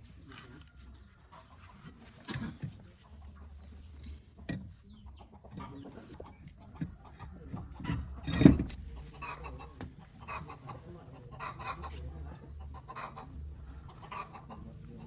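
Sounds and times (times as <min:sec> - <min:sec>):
chickens clucking: 0:00.0 - 0:15.0
knocks and clanks: 0:07.9 - 0:08.9.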